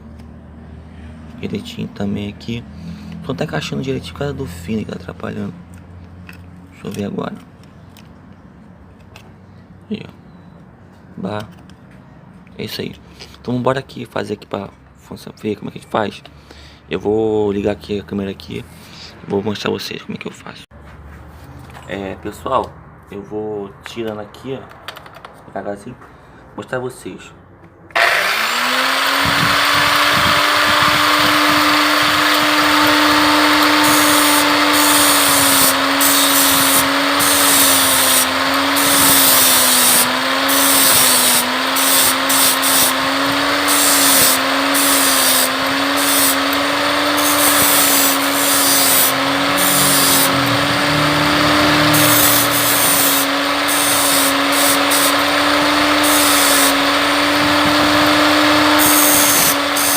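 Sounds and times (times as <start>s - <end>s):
angle grinder motor running: 27.9s - 59.9s
harsh rasping grind: 28.0s - 59.9s.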